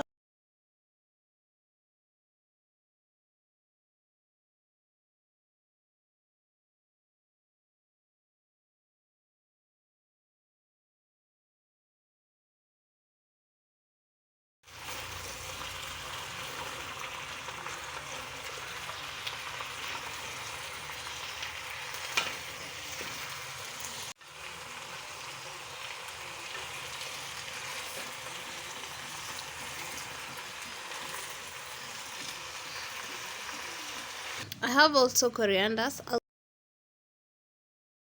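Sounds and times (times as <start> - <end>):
stew sizzling in pot: 14.7 - 35.2.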